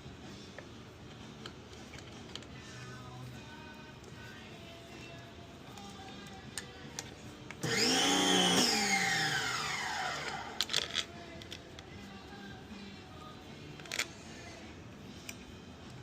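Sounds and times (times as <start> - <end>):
small electric motor whirring: 7.6 - 10.6.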